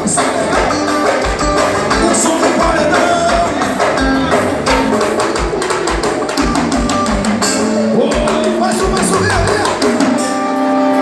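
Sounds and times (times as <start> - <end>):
kick drum beat: 0.0 - 7.5
live band instrumental music: 0.0 - 11.0.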